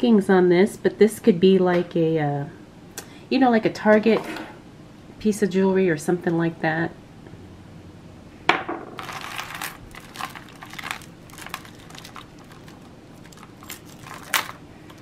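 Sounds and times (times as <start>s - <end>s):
jewelry and beads clinking: 9.0s - 15.0s.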